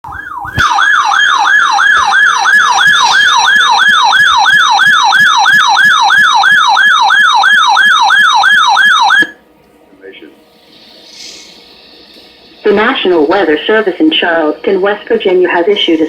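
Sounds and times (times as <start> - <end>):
electronic siren yelping: 0.0 - 9.4.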